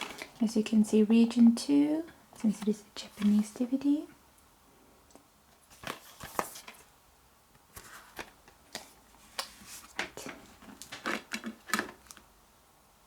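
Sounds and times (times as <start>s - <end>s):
plastic case clicking and rustling: 7.8s - 12.2s.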